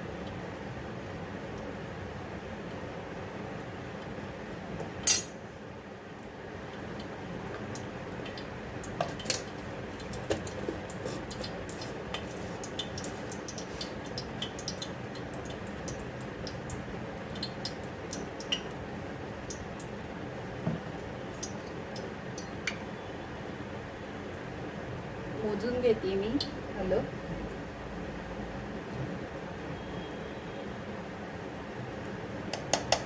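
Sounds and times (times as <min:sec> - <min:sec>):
ghee crackling in a pan: 0:05.9 - 0:24.5.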